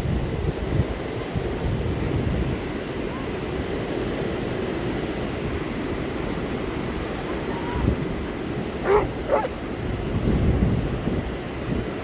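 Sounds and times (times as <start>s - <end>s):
ocean surf rushing: 0.0s - 12.0s
wind buffeting microphone: 0.0s - 12.0s.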